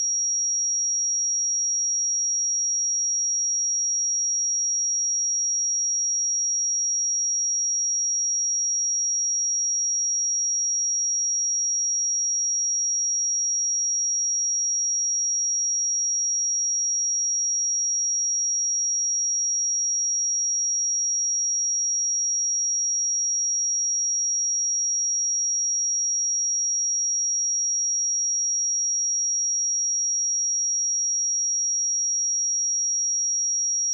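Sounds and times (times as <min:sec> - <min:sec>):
high-pitched sine test tone: 0:33.6 - 0:33.9.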